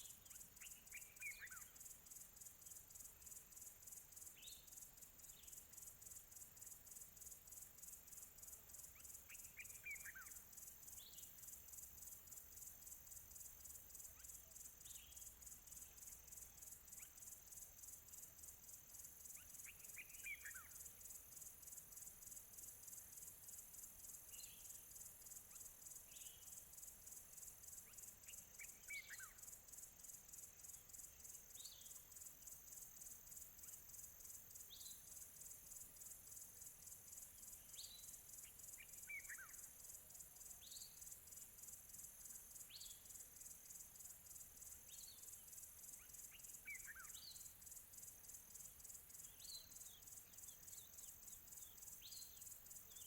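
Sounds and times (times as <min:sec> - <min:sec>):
crickets chirping: 0:00.0 - 0:53.0
bird chirping: 0:19.3 - 0:20.8, 0:44.6 - 0:47.6, 0:49.1 - 0:53.0.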